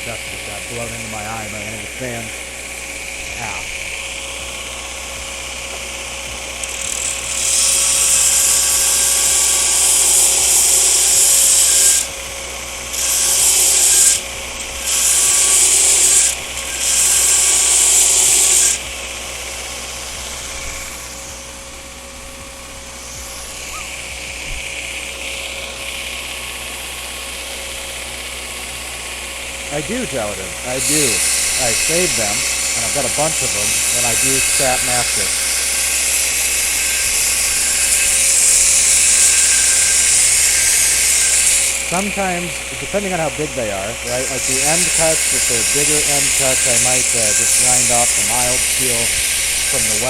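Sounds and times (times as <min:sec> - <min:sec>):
belt grinder running: 0:00.0 - 0:50.0
shop fans running: 0:00.0 - 0:50.0
steel grinding on belt grinder: 0:00.0 - 0:50.0.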